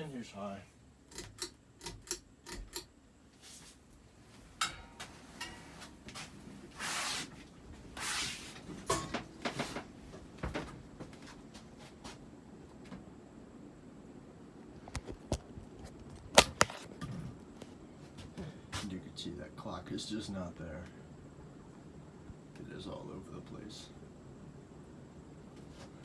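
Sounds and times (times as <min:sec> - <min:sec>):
ceiling fan running: 0:00.0 - 0:26.0
fan clicking and knocking: 0:01.0 - 0:03.0, 0:04.5 - 0:06.8, 0:08.5 - 0:11.6, 0:14.8 - 0:18.9.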